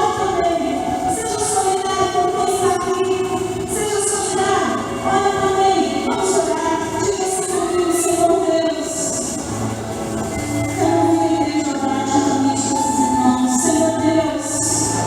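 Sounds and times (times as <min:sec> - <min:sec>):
musical accompaniment: 0:04.8 - 0:15.0.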